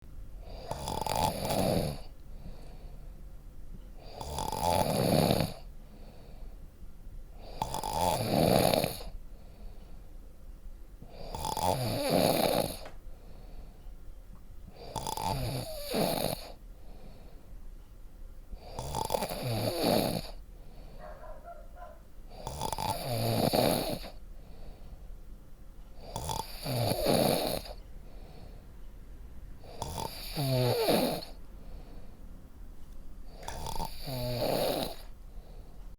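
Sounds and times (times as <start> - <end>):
person snoring: 0.4 - 2.7, 4.0 - 5.7, 7.4 - 9.2, 11.1 - 12.9, 14.8 - 16.6, 18.6 - 20.4, 22.3 - 24.2, 26.0 - 27.8, 29.6 - 31.4, 33.3 - 35.1.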